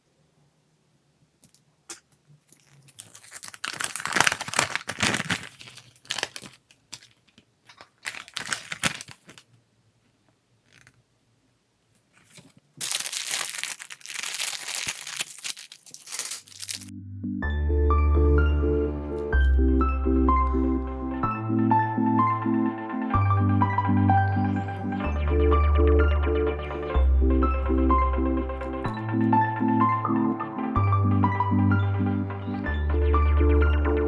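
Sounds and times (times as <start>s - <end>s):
plastic bag tearing and crinkling: 2.4s - 9.5s, 10.7s - 11.0s, 12.2s - 16.9s.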